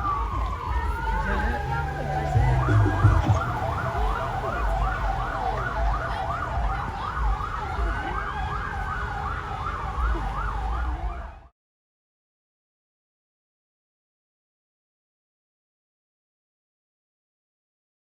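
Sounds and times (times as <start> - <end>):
low rumble: 0.0 - 5.2
siren yelp: 0.0 - 11.5
wailing siren tone: 0.0 - 11.5.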